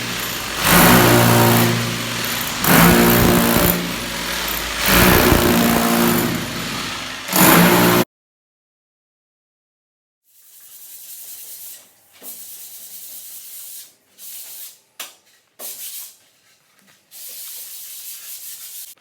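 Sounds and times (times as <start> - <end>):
power tool cutting into wall: 0.0 - 8.0.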